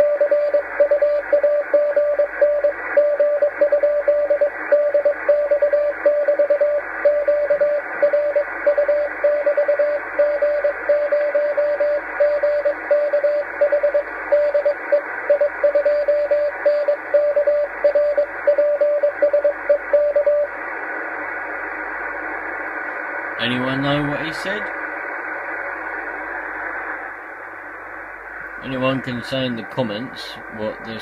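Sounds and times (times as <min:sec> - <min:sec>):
morse code tone: 0:00.0 - 0:20.5
receiver hiss: 0:00.0 - 0:31.0.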